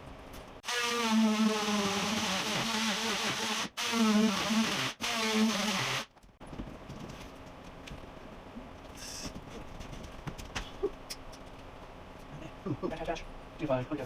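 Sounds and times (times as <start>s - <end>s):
electric power tool buzzing: 0.6s - 6.1s.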